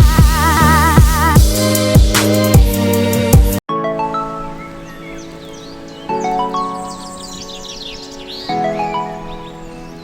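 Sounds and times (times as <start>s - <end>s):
birds chirping: 4.0s - 10.0s.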